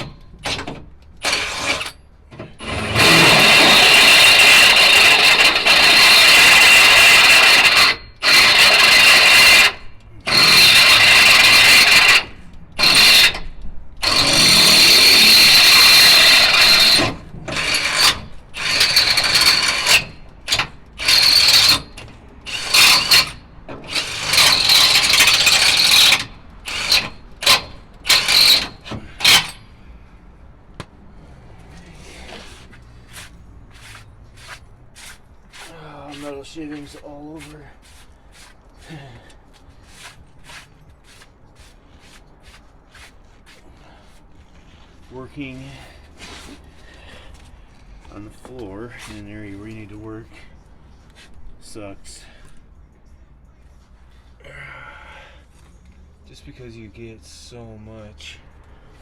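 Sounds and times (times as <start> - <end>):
electric drill boring through steel: 2.6 - 13.4, 14.0 - 29.4.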